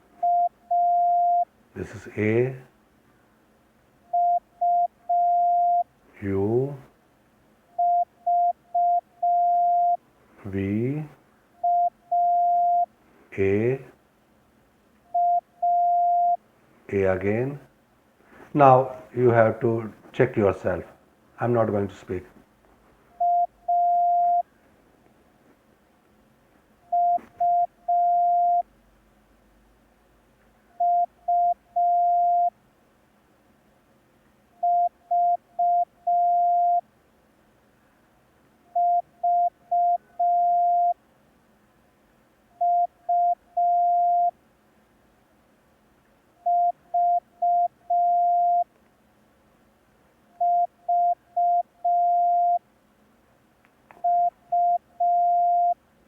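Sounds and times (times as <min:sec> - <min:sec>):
morse code tone: 0:00.2 - 0:01.5, 0:04.1 - 0:05.8, 0:07.8 - 0:10.0, 0:11.6 - 0:13.6, 0:15.1 - 0:16.4, 0:23.2 - 0:24.4, 0:26.9 - 0:28.6, 0:30.8 - 0:32.5, 0:34.6 - 0:36.8, 0:38.8 - 0:41.0, 0:42.6 - 0:44.3, 0:46.4 - 0:48.6, 0:50.4 - 0:52.6, 0:54.0 - 0:55.8.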